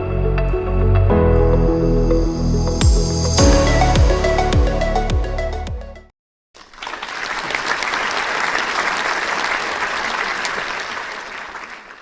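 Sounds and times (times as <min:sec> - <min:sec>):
background music: 0:00.0 - 0:06.1
crowd applauding: 0:06.6 - 0:12.0.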